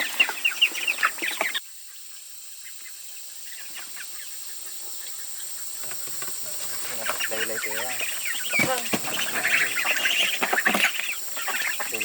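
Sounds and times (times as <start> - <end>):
poultry chirping faintly: 0.0 - 12.0.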